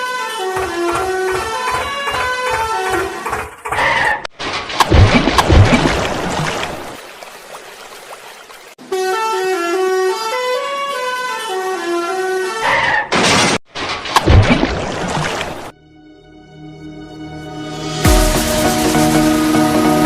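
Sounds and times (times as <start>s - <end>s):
musical vehicle horn tune: 0.0s - 1.4s, 8.8s - 12.7s
knocks: 0.5s - 4.2s.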